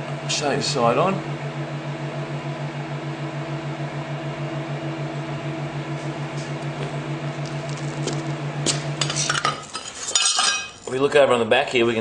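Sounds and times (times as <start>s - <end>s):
welding machine humming: 2.6s - 11.0s.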